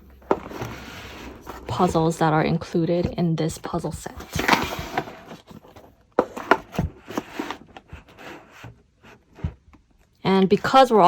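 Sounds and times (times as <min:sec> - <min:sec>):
cardboard boxes tapping and knocking: 0:00.2 - 0:09.8.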